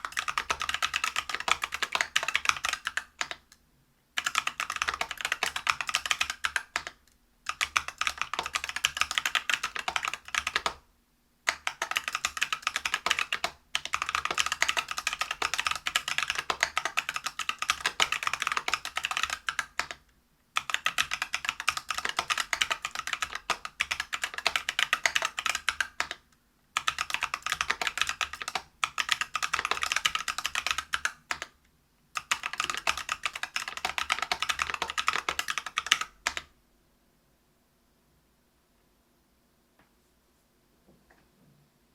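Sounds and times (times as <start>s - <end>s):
fast mechanical keyboard typing: 0.0s - 3.4s, 4.2s - 10.8s, 11.5s - 20.0s, 20.6s - 26.2s, 26.8s - 31.5s, 32.2s - 36.5s.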